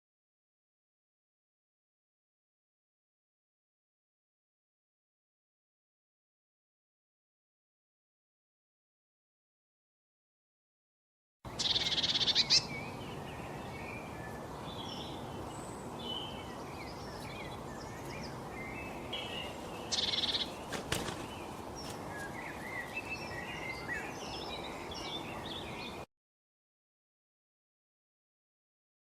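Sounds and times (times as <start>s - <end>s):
rapid high bird trill: 11.5s - 12.9s, 19.1s - 24.1s
outdoor background hiss: 11.5s - 26.1s
songbirds chirping: 11.5s - 26.1s.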